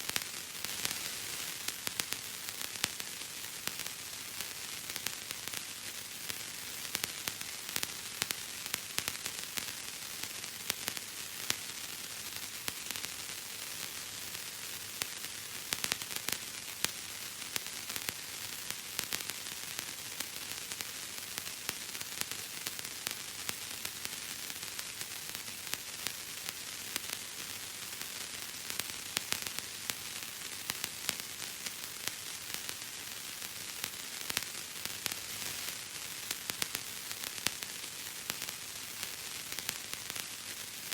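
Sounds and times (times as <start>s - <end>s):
steady hiss: 0.0s - 40.9s.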